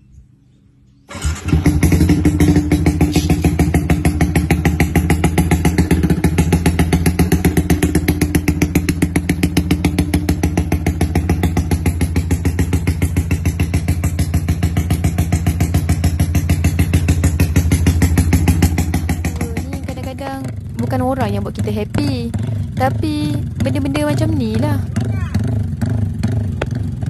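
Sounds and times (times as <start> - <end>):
motorcycle engine idling: 1.1 - 27.0.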